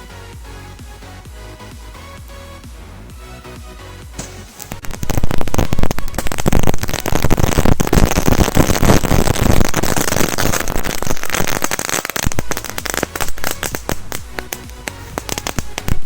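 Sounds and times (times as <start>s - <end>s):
firecrackers banging: 4.2s - 16.0s.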